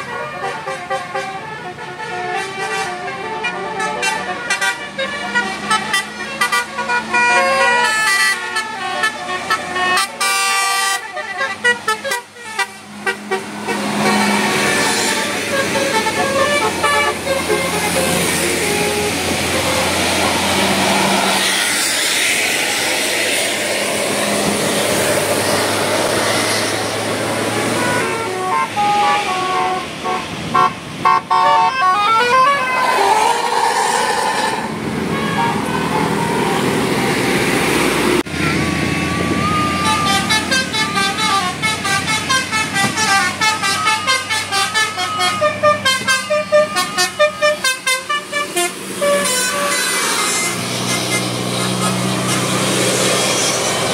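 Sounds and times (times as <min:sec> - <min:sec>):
bus horns playing quick tunes: 0:00.0 - 0:21.4, 0:27.4 - 0:37.1, 0:38.3 - 0:53.6
bus and street noise: 0:00.0 - 0:53.9.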